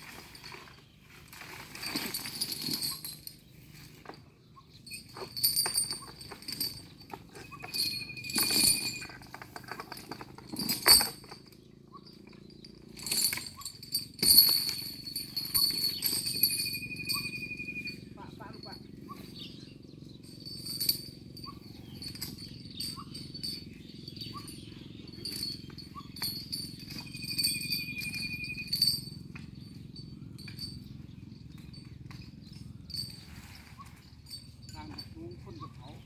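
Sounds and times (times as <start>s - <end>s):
metallic jingling and clinking: 0.0s - 36.0s
thin whistle-like tone: 16.8s - 18.1s.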